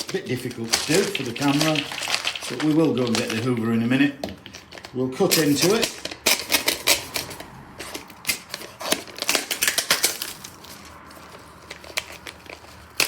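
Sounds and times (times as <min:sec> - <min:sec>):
plastic tub clicks and crackles: 0:00.0 - 0:06.7.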